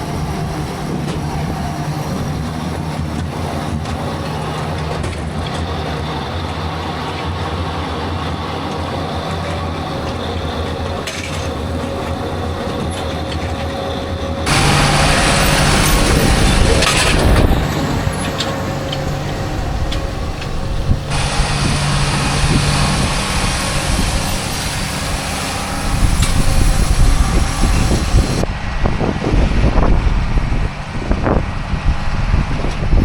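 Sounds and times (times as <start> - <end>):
tractor engine running: 0.0 - 33.0
loud rushing noise: 14.4 - 33.0.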